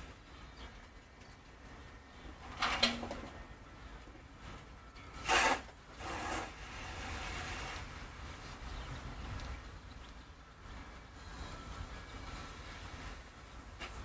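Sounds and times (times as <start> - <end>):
water spray hissing: 5.2 - 8.0.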